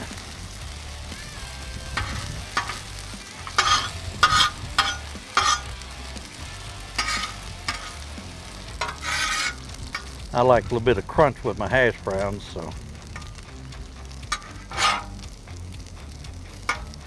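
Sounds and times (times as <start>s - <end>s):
spatula scraping on steel: 0.0s - 10.4s, 12.8s - 15.5s, 16.6s - 17.0s
hash browns sizzling on griddle: 0.0s - 17.0s.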